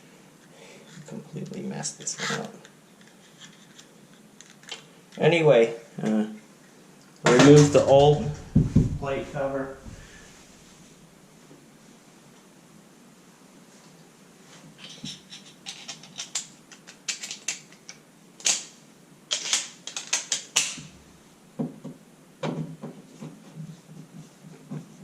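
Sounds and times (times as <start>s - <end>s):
dull knocks: 7.3s - 10.2s.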